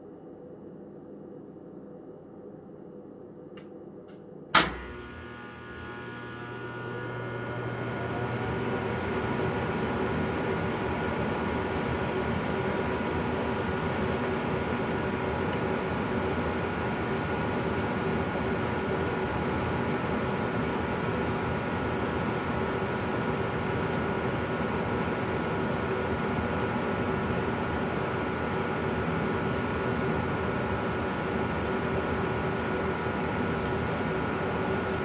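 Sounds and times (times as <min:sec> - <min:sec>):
relay click: 0:04.1 - 0:06.4
low buzz: 0:04.6 - 0:10.0
furnace blower running: 0:04.6 - 0:22.8.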